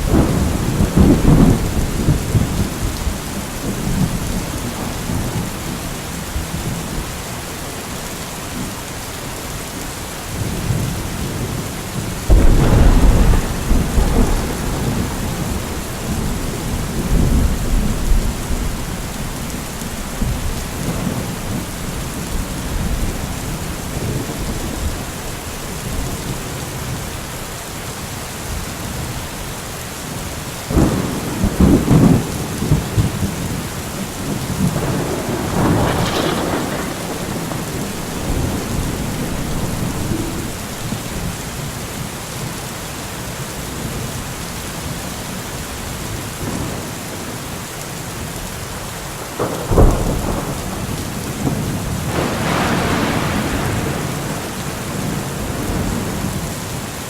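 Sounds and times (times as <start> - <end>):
rolling thunder: 0.0 - 5.8, 10.4 - 27.0, 30.7 - 41.6, 49.4 - 56.9
steady rain: 0.0 - 57.0.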